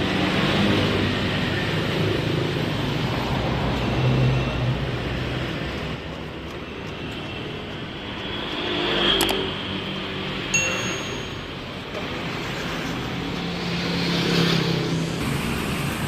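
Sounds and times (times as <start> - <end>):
road noise: 0.0 - 16.0
vehicles passing: 0.0 - 16.0.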